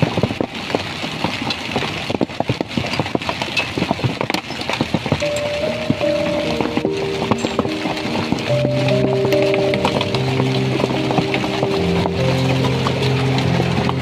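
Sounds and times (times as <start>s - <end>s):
heavy rain hiss: 0.0s - 14.0s
raindrops tapping a hard surface: 0.0s - 14.0s
melody: 5.2s - 14.0s.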